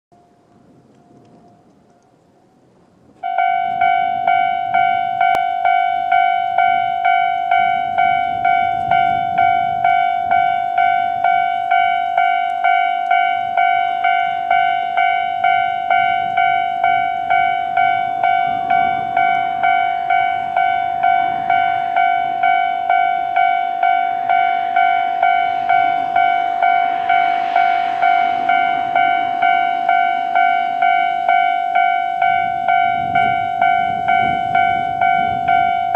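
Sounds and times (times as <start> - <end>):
passing train rumble: 0.1 - 35.9
level crossing alarm ding: 3.2 - 25.5.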